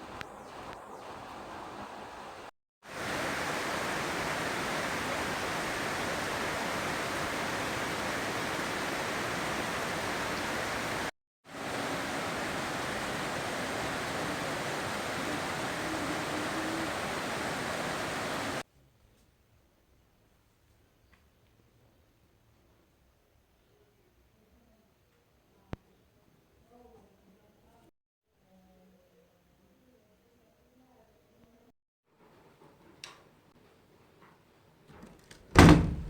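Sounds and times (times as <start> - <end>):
hiss of falling water: 0.0 - 18.6.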